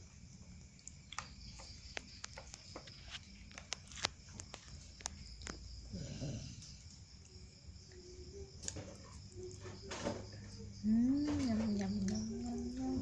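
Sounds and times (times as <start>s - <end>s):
child eating clicks and smacks: 0.4s - 5.9s, 6.6s - 9.8s.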